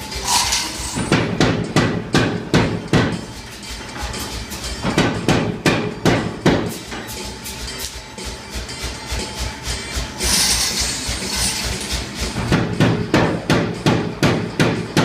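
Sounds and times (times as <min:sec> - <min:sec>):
power hammer striking hot steel: 0:00.0 - 0:03.3, 0:10.1 - 0:15.0.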